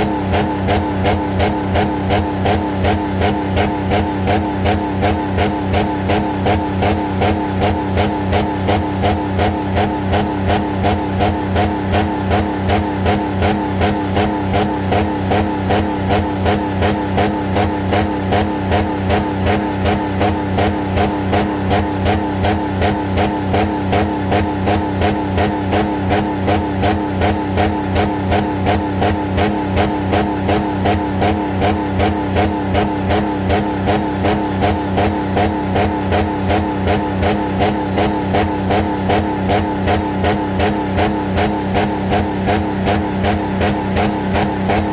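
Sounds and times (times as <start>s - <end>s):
car engine running with rhythmic pulse: 0.0s - 44.9s.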